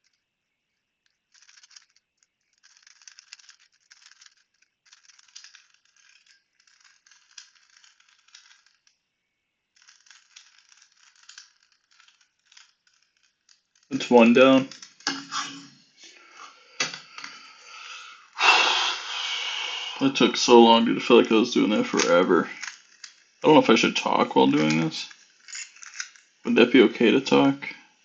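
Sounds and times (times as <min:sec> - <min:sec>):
puzzle cube plastic clicking: 0:01.1 - 0:09.0, 0:09.7 - 0:15.3, 0:24.5 - 0:26.4.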